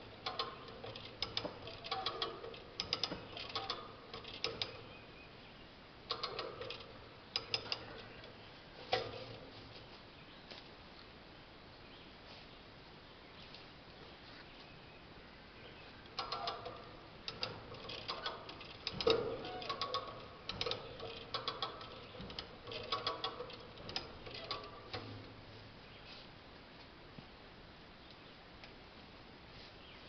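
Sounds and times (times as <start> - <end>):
hand tools clanking on steel: 16.2 - 25.2.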